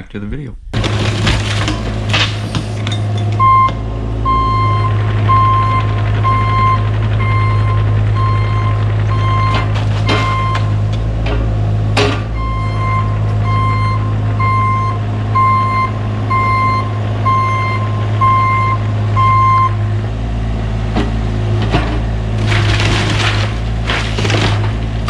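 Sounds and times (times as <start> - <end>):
timbers crunching and splintering: 0.8 - 3.8, 8.6 - 12.3, 21.0 - 25.0
excavator diesel engine running: 0.8 - 25.0
travel alarm beeping: 3.4 - 9.6, 12.4 - 19.8.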